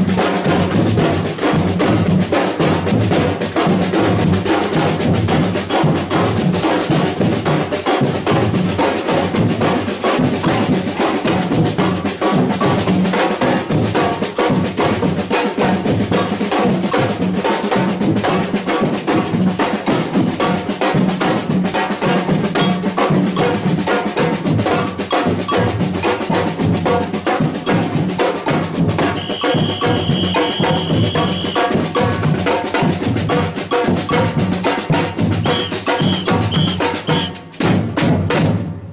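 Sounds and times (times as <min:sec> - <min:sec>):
samba drum group playing: 0:00.0 - 0:38.9
high steady tone: 0:22.6 - 0:23.6, 0:29.0 - 0:32.2, 0:35.2 - 0:37.3.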